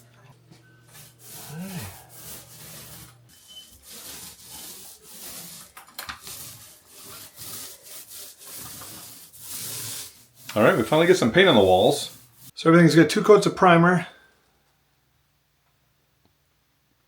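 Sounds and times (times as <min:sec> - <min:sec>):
hand tool rubbing drywall: 0:00.8 - 0:12.6.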